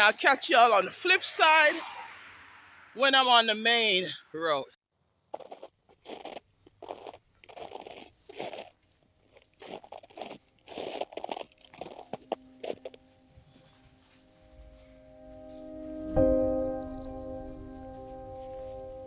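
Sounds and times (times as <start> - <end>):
footsteps crunching on frozen snow: 5.3 - 16.2.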